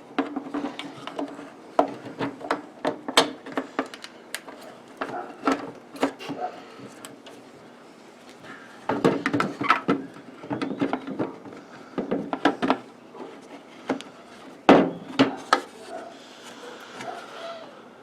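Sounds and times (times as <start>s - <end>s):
plastic parts clicking and knocking: 0.2s - 6.2s, 8.9s - 12.8s.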